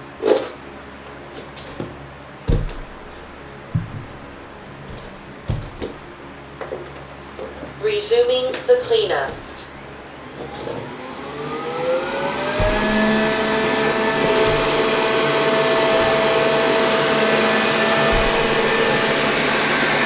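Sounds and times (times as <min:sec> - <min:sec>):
robot vacuum fan whine: 0:07.6 - 0:20.0.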